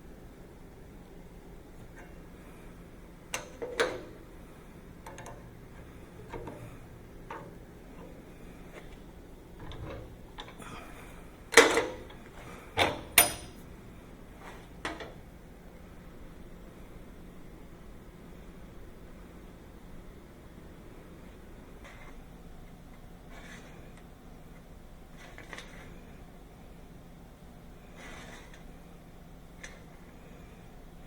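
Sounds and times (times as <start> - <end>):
steel parts clinking on metal: 12.8 - 13.6.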